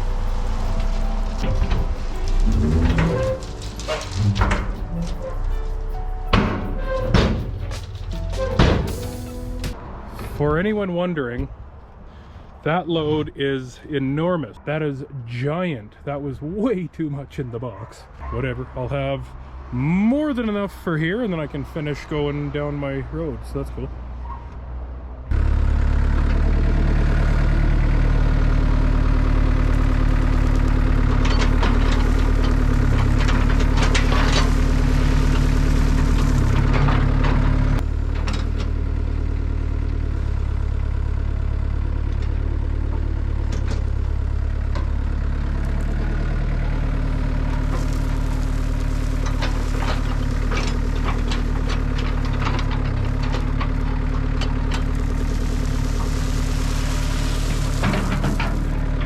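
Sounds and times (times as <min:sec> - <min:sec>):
metallic clanks and rattles: 0:00.0 - 0:10.4, 0:31.0 - 0:38.8, 0:49.2 - 0:55.0
diesel engine running: 0:00.0 - 0:10.7, 0:25.3 - 0:59.0.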